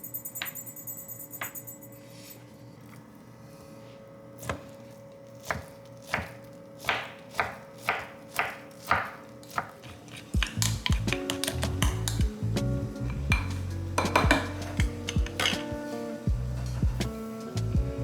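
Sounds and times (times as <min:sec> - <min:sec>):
knife chopping on cutting board: 0:05.4 - 0:12.3, 0:13.2 - 0:15.7
kitchenware clattering: 0:09.8 - 0:12.4, 0:13.1 - 0:15.9.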